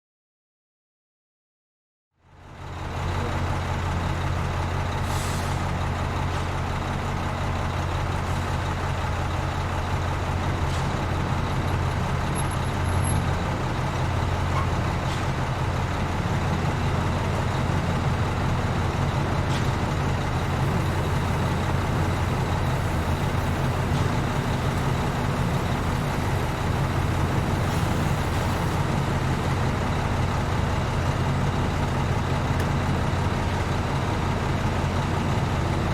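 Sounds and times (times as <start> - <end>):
diesel engine rumbling: 2.2 - 35.9.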